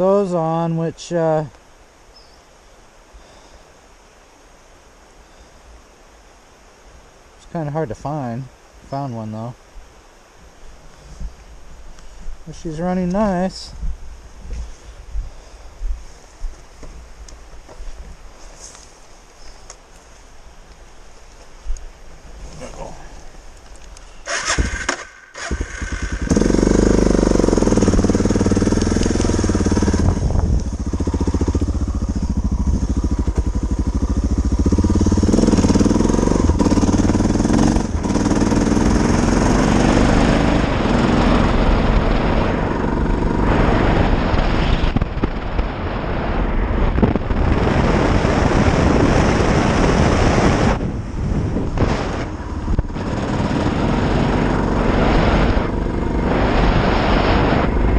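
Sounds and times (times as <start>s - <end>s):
motorcycle engine revving: 24.3s - 57.9s.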